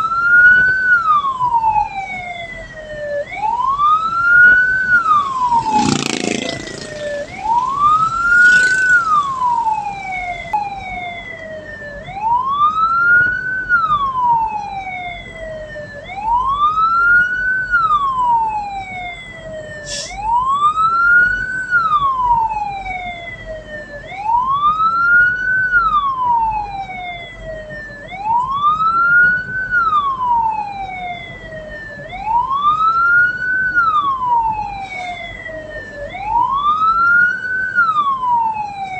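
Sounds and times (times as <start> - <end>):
siren wailing: 0.0 - 38.9
vehicle running noise: 0.0 - 38.9.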